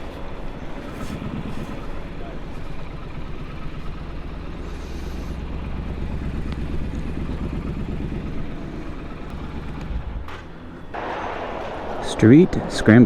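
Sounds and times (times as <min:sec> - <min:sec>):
motorcycle engine low rumble: 0:00.0 - 0:13.0.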